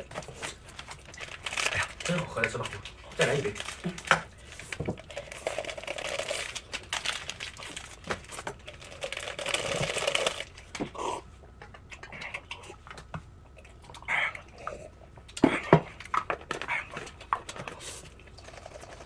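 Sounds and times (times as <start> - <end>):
person slurping and eating: 5.0 - 6.6, 17.8 - 19.0.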